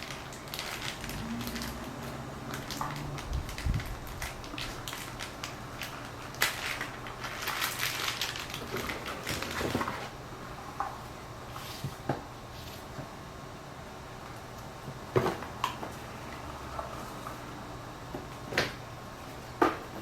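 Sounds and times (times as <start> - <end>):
packaging crinkling and rustling: 0.0 - 10.2.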